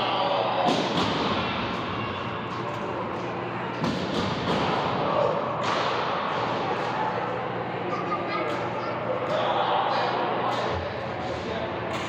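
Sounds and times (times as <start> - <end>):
people chattering and calling out: 6.2 - 12.0.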